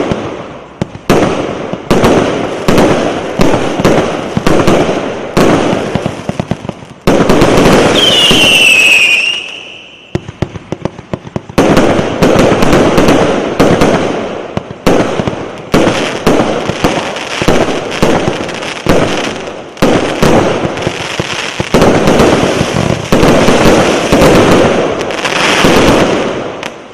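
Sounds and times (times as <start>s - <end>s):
firework bursts with crackling: 0.0s - 26.9s
firework falling whistle: 7.9s - 10.3s.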